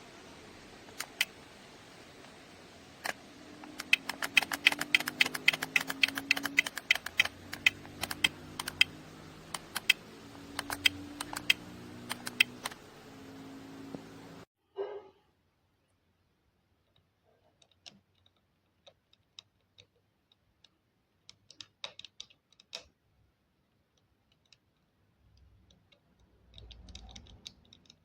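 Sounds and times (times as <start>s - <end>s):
faint clicks and ticks: 0.8s - 1.5s, 3.0s - 13.0s, 16.8s - 28.0s.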